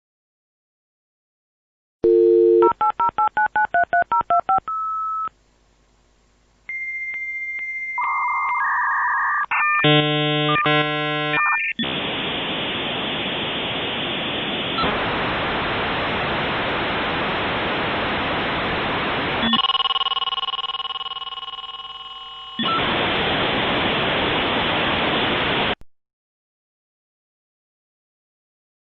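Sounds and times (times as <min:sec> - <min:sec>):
warbling modem handshake tones: 0:06.7 - 0:12.6, 0:19.4 - 0:23.1
buzzy tones: 0:09.8 - 0:15.1
loud modem hiss: 0:09.8 - 0:19.9, 0:21.2 - 0:25.8
touch-tone dialing: 0:19.5 - 0:22.8.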